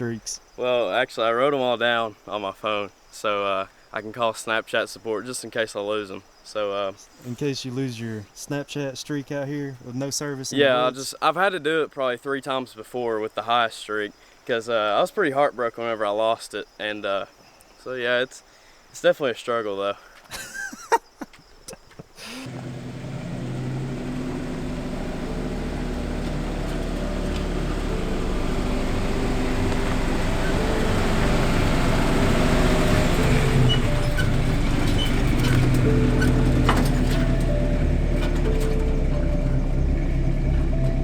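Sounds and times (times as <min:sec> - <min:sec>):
vehicle engine running: 0:22.4 - 0:41.0
background music: 0:22.6 - 0:41.0.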